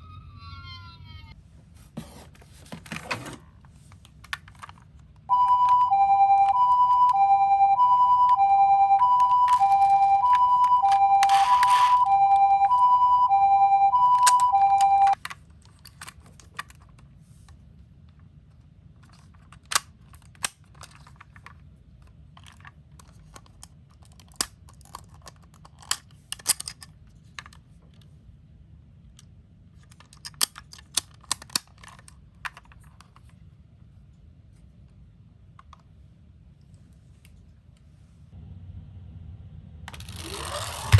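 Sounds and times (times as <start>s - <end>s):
toy siren two-tone: 5.3s - 15.2s
toy cars clicking and clacking: 9.0s - 12.1s, 39.9s - 40.9s.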